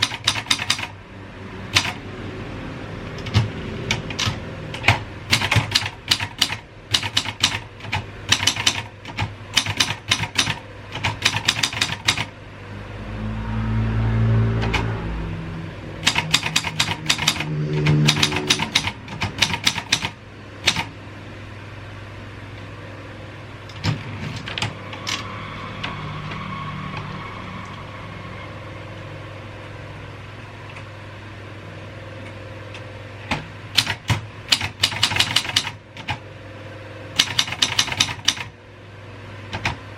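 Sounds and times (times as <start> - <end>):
typewriter keys striking: 0.0 - 0.9, 3.2 - 12.3, 16.0 - 20.9, 33.8 - 36.2, 37.2 - 38.5.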